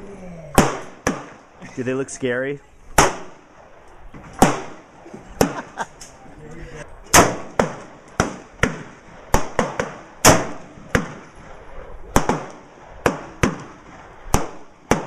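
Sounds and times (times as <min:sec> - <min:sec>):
gunshots with echo: 0:00.6 - 0:01.6, 0:03.0 - 0:03.5, 0:04.4 - 0:05.8, 0:07.1 - 0:11.4, 0:12.1 - 0:15.0.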